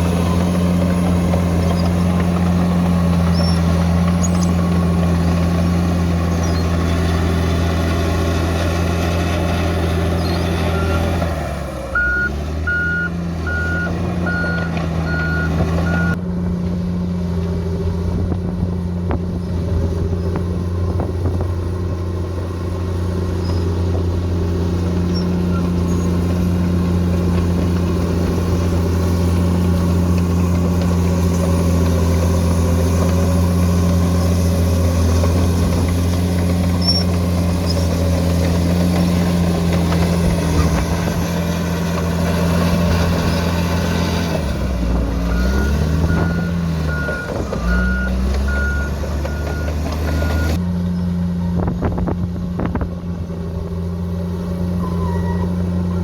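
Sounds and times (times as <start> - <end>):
diesel engine running: 0.0 - 56.0
reversing alarm beeping: 11.9 - 16.2, 45.3 - 50.6.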